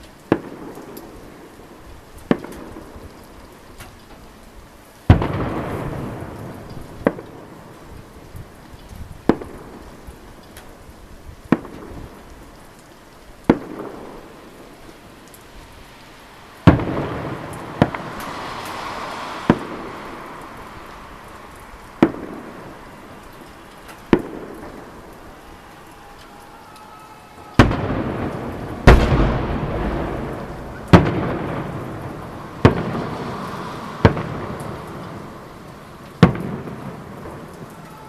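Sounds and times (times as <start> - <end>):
firework shells booming: 5.1 - 7.4, 13.5 - 14.4, 16.6 - 20.3, 22.0 - 23.2, 24.0 - 25.1, 27.6 - 37.8
echoing rumble and crackle: 16.6 - 26.4, 27.6 - 37.9.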